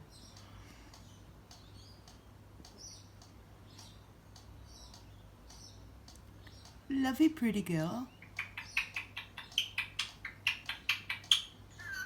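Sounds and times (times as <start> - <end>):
parrot chirps and squeaks: 8.1 - 12.0.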